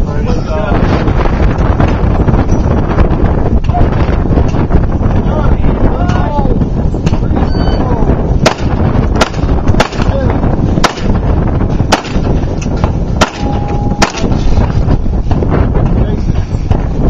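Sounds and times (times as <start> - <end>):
wind noise on microphone: 0.0 - 17.0
gunshots: 8.4 - 11.2, 11.9 - 12.4, 13.2 - 14.4.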